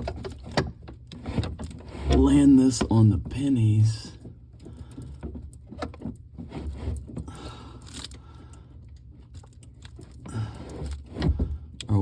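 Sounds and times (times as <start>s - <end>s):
light clicks and rattles: 0.0s - 12.0s.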